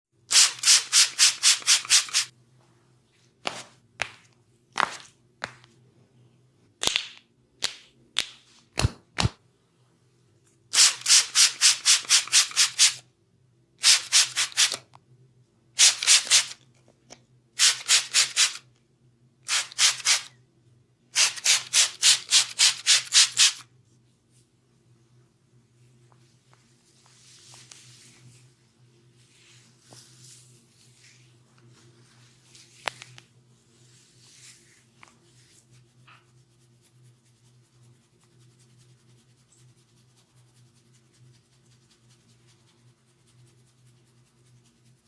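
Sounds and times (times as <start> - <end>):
hands rubbing over bare skin: 25.9 - 45.0.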